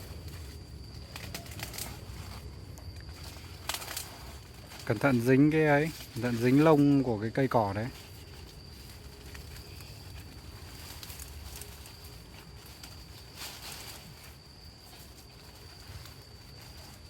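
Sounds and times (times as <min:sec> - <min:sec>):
high-pitched insect call: 0:00.0 - 0:17.0.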